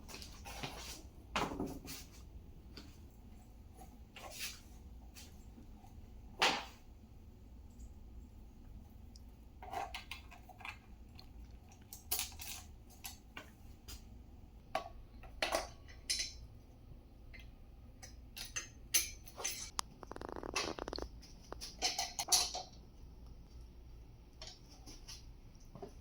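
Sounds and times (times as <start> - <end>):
metal tools clinking and knocking: 18.0 - 19.8.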